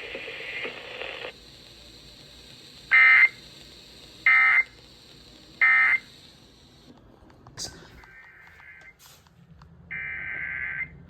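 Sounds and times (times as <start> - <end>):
buzzy digital data bursts: 0.0 - 6.8.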